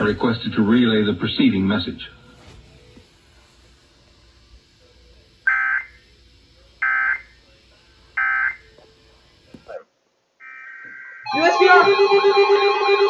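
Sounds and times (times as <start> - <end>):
buzzy digital data bursts: 0.0 - 9.8.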